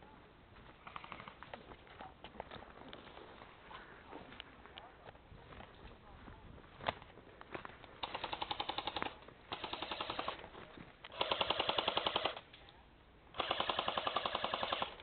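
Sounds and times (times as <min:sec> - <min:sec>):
airsoft gun automatic bursts: 0:08.0 - 0:10.4, 0:11.1 - 0:12.4, 0:13.4 - 0:15.0.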